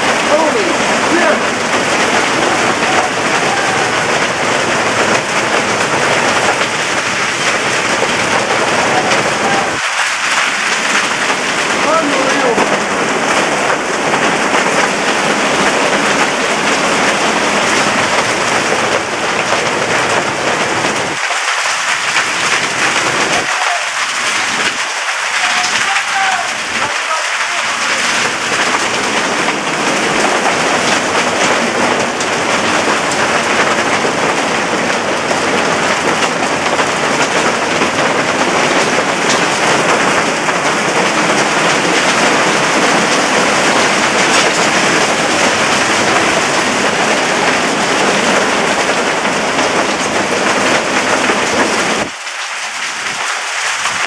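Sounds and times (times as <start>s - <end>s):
high winds: 0.0s - 21.2s
hail and rain pelting: 0.0s - 54.0s.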